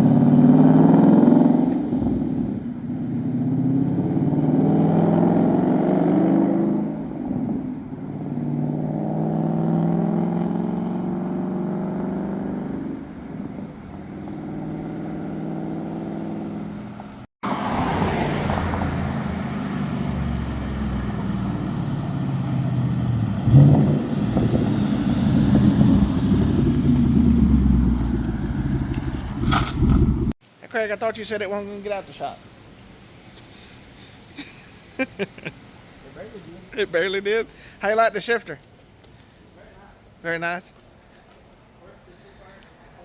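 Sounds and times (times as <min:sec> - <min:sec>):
car engine revving: 0:00.0 - 0:16.9, 0:17.5 - 0:30.4.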